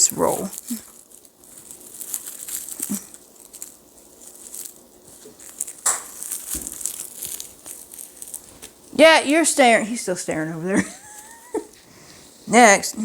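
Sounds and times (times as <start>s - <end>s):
fabric rustling and crinkling: 0.0s - 9.2s.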